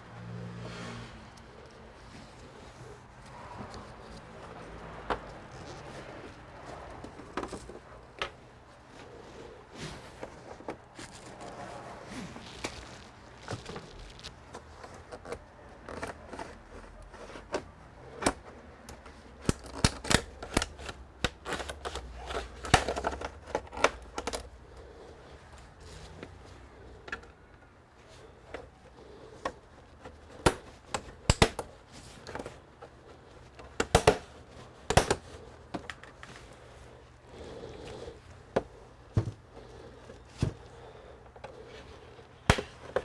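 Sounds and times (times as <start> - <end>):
plastic clicks and snaps: 18.2 - 24.5.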